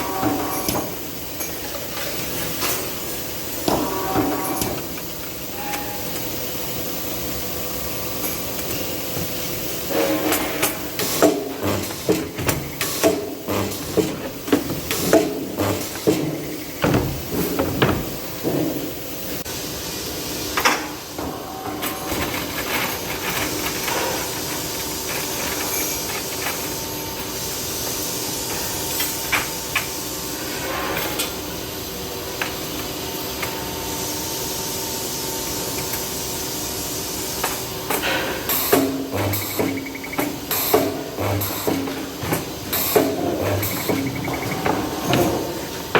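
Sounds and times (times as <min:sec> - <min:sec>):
machine hiss and hum: 0:00.0 - 0:45.9
metallic knocks and clunks: 0:11.2 - 0:18.9.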